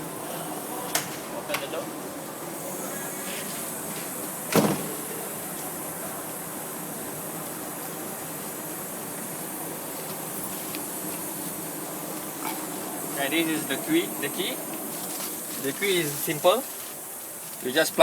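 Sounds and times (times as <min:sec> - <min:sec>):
steady background hiss: 0:00.0 - 0:18.0
cab door banging shut: 0:04.5 - 0:05.1.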